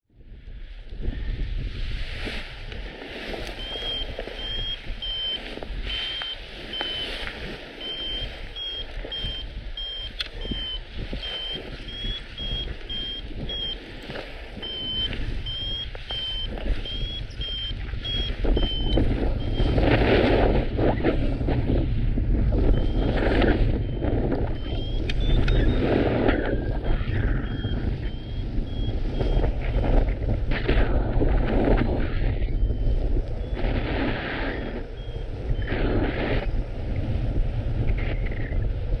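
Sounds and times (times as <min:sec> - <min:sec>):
wind buffeting microphone: 0:00.1 - 0:39.0
variometer beeping: 0:03.4 - 0:20.5, 0:22.5 - 0:30.4, 0:32.3 - 0:36.6.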